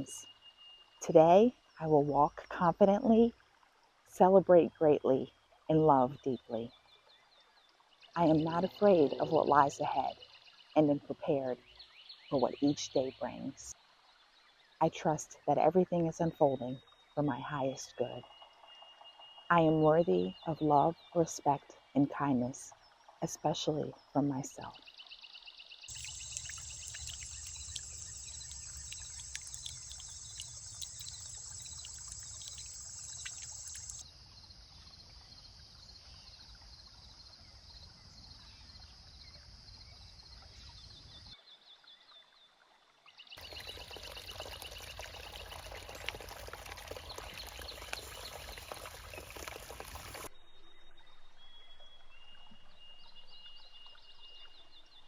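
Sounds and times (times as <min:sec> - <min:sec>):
birdsong: 0:25.9 - 0:34.0
running water: 0:25.9 - 0:34.0, 0:43.4 - 0:50.3
thin high bird call: 0:25.9 - 0:34.0.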